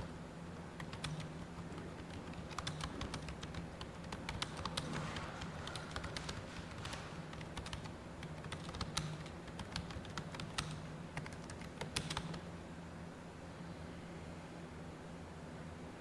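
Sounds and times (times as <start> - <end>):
low steady hum: 0.0 - 16.0
fast keyboard typing: 0.8 - 12.5.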